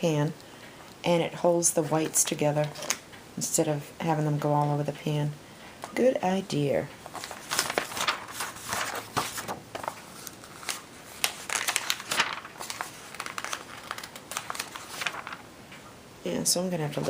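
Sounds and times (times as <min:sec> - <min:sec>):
paper rustling and crinkling: 0:07.0 - 0:15.4.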